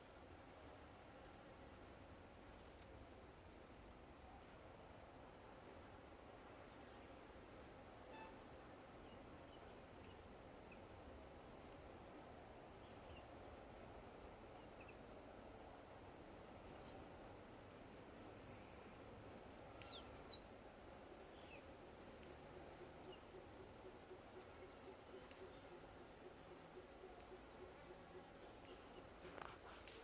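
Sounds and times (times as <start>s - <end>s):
small songbirds chirping: 9.0s - 15.4s, 16.3s - 30.0s.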